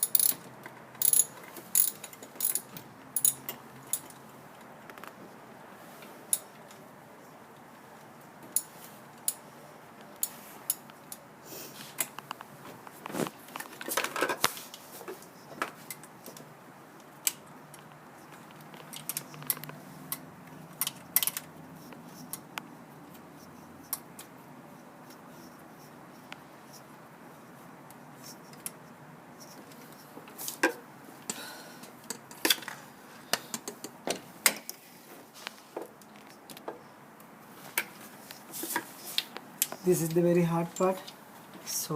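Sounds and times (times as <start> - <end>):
metallic clicks of hand tools: 1.0 - 4.2.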